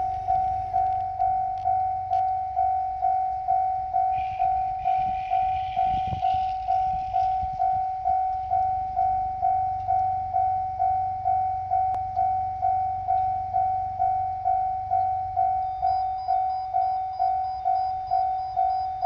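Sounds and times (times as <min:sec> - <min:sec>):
electronic crossing bell ringing: 0:00.0 - 0:19.0
diesel train rumbling: 0:03.6 - 0:19.0
hissing squeal: 0:04.1 - 0:07.8.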